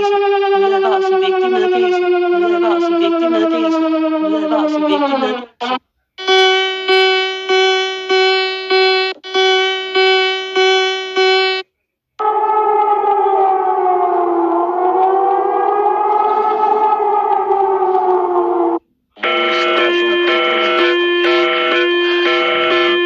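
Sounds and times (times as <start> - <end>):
wavering siren-like tone: 0.0 - 5.5, 12.2 - 23.0
buzzy alarm beeps: 6.2 - 11.6, 19.2 - 23.0.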